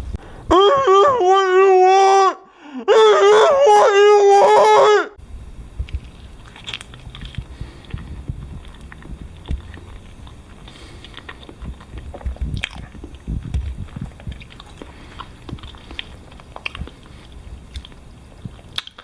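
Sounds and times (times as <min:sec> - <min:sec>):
person chewing close to microphone: 0:05.8 - 0:19.0.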